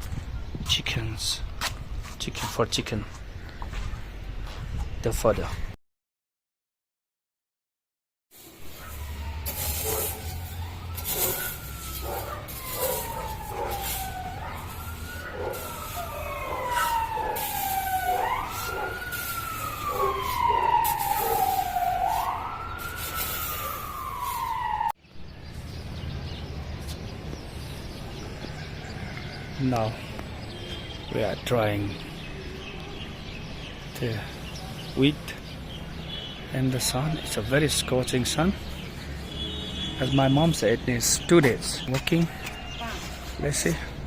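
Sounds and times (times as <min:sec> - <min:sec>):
outdoor background noise: 0:00.0 - 0:05.8, 0:08.3 - 0:44.0
wailing siren: 0:08.3 - 0:25.0.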